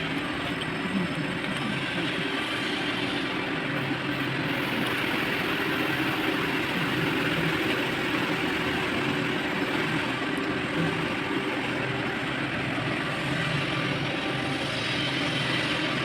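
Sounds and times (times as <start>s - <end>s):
engine running steadily: 0.0s - 16.0s.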